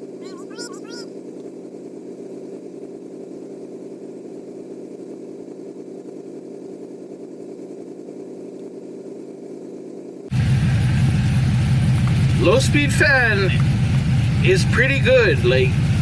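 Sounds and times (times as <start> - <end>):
electric radiator fans running: 0.0 - 16.0
pickup truck engine idling: 10.3 - 16.0.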